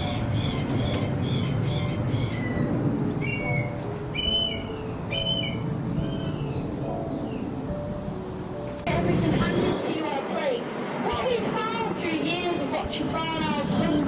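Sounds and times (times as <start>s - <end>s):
bird of prey calling: 0.0s - 7.4s, 13.4s - 14.0s.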